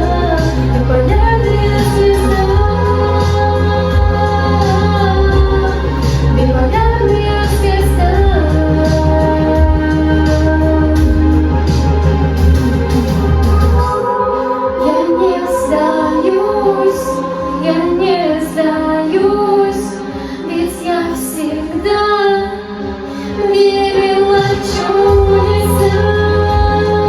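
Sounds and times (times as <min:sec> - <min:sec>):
girl singing: 0:00.0 - 0:11.3, 0:13.8 - 0:27.0
deep bass line: 0:00.0 - 0:18.9, 0:24.8 - 0:27.0
synthesizer chords: 0:00.0 - 0:27.0.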